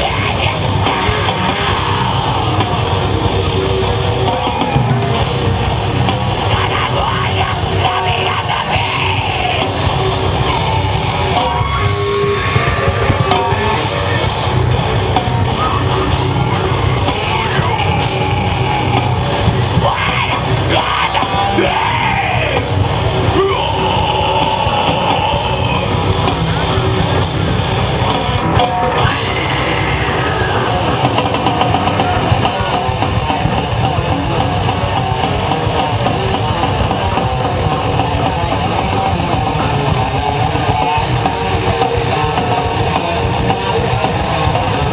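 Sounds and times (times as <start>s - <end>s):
shouted vocals: 0.0s - 2.8s, 6.4s - 14.3s, 17.0s - 26.0s, 28.9s - 33.3s
rock band playing heavy song: 0.0s - 44.9s.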